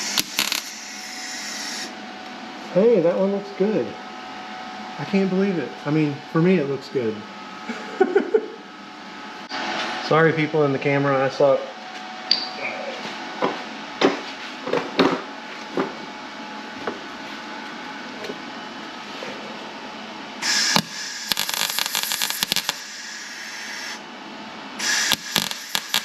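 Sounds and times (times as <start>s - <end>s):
welder crackling: 0.0s - 1.9s, 20.4s - 22.9s, 24.8s - 26.0s.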